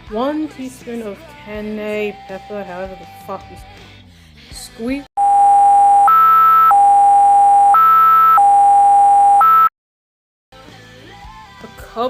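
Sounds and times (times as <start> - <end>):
buzzy two-pitch electronic beep: 5.2 - 9.7.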